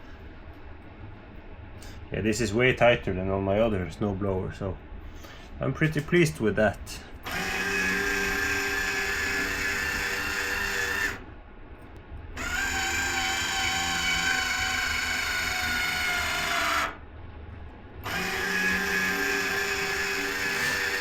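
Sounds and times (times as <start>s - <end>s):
small electric motor whining: 7.2s - 11.2s, 12.4s - 17.0s, 18.0s - 21.0s.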